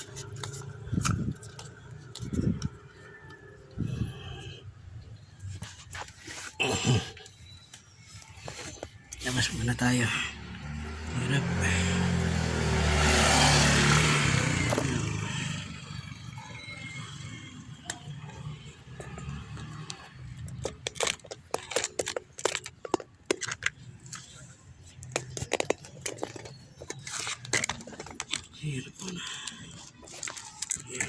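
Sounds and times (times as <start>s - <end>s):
vehicle passing by: 9.4s - 20.6s.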